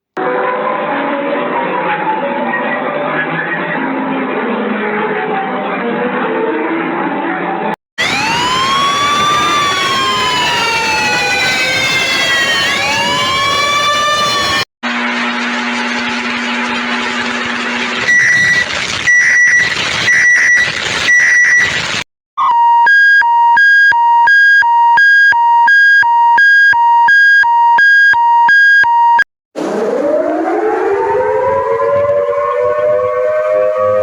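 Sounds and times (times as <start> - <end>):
two-tone electronic siren: 0.2 - 4.3, 8.0 - 15.1, 18.0 - 34.0
civil defence siren winding up: 8.0 - 15.4, 22.4 - 34.0.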